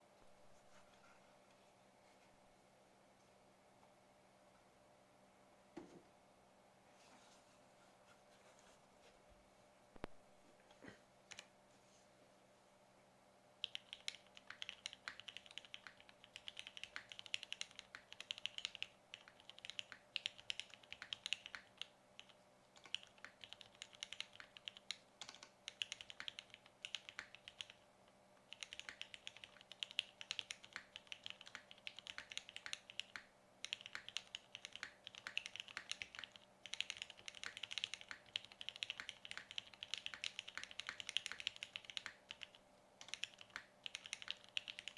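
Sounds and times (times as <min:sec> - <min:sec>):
mechanical keyboard typing: 0:13.6 - 0:27.8, 0:28.4 - 0:44.9.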